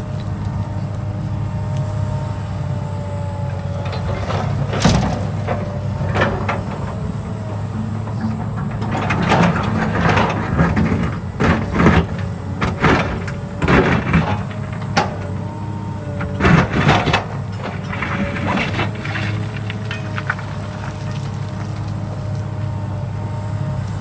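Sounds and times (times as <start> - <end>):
excavator engine running: 0.0 - 24.0
loud scraping and clattering: 3.8 - 22.5.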